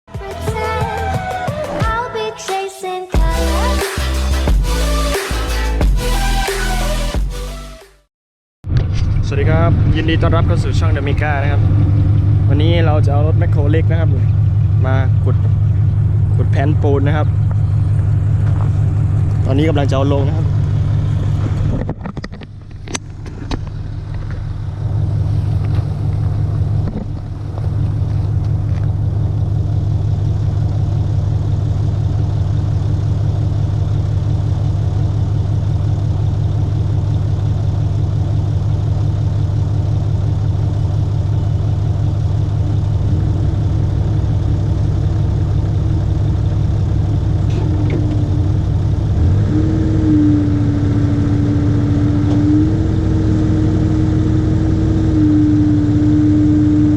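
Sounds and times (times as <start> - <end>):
excavator diesel engine running: 22.5 - 56.9.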